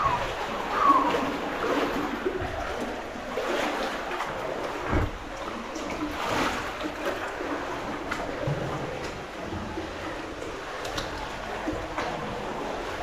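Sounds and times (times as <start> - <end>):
water sloshing and splashing: 0.0 - 13.0.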